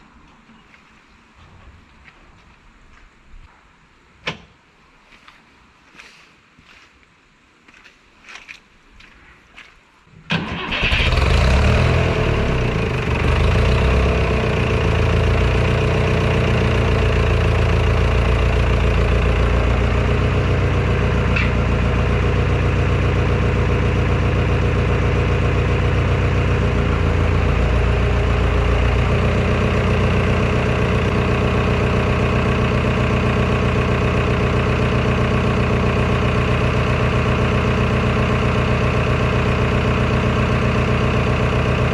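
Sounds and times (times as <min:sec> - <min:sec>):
engine starting and idling: 0:10.3 - 0:41.9.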